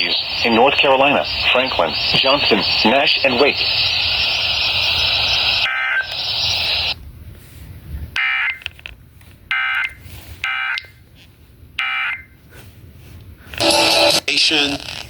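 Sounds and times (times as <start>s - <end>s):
radio hiss: 0.0s - 7.0s, 13.6s - 15.0s
screeching two-tone data bursts: 0.0s - 7.0s, 13.6s - 14.8s.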